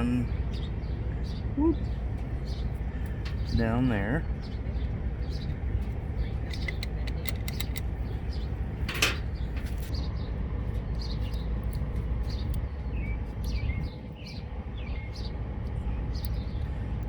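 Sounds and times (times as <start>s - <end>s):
birds chirping: 0.0s - 17.0s
steady low rumble: 0.0s - 17.0s
small metal clicks: 6.4s - 7.9s.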